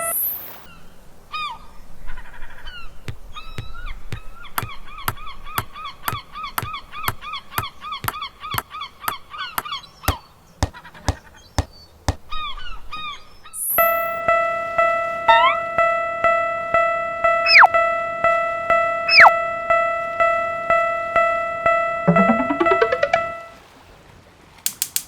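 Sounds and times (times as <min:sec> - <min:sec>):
regular clicks: 0:03.1 - 0:12.2, 0:24.7 - 0:25.0
cartoon honking squeaks: 0:17.5 - 0:17.7, 0:19.1 - 0:19.3.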